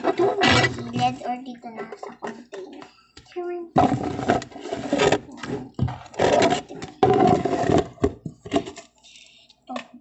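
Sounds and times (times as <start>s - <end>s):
slime scraping in plastic container: 3.8s - 8.8s.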